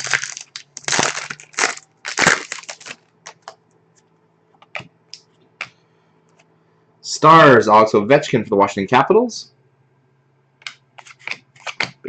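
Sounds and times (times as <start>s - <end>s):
cards rustling and swishing: 11.0s - 12.0s.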